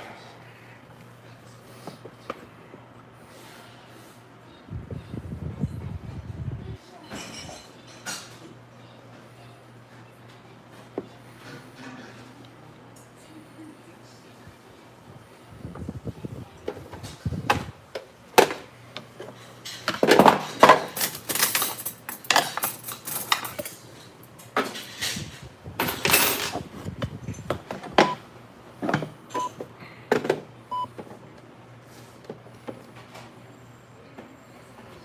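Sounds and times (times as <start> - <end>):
tableware clattering: 7.0 - 8.5, 19.6 - 26.6.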